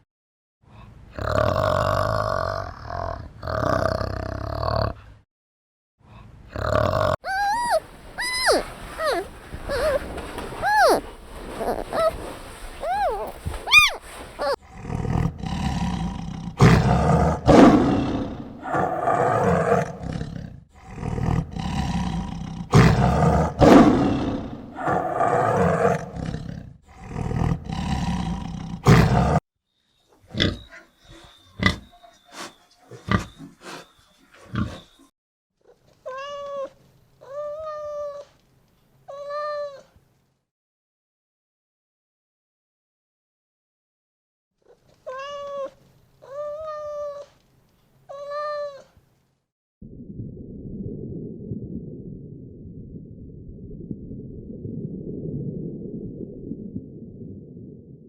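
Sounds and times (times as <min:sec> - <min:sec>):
short pitched animal cries: 0:07.2 - 0:14.6
animal roaring and growling: 0:12.8 - 0:29.4.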